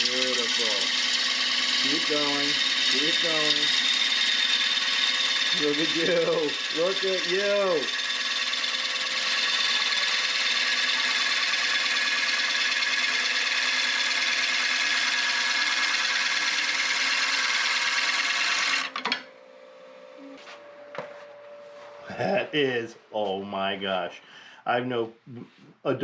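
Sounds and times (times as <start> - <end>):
gouge cutting wood hiss: 0.0 - 8.6
lathe whine: 0.0 - 22.0.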